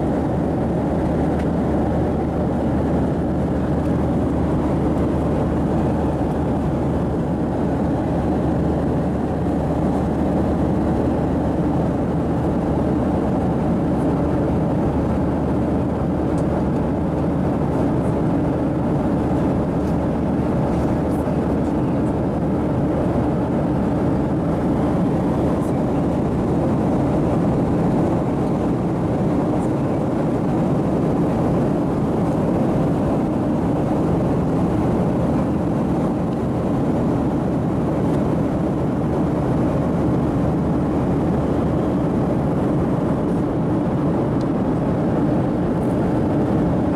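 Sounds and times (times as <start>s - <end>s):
airflow rushing over fuselage: 0.0s - 46.9s
jet engines droning: 0.0s - 46.9s.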